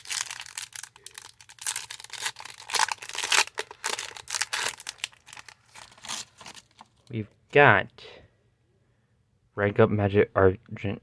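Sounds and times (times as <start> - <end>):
foil wrapper tearing and crinkling: 0.0 - 6.9.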